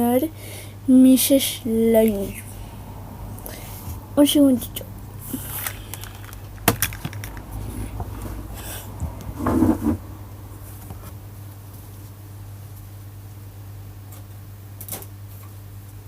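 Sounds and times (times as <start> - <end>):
steady low hum: 0.0 - 16.0
small objects clicking: 5.6 - 7.5.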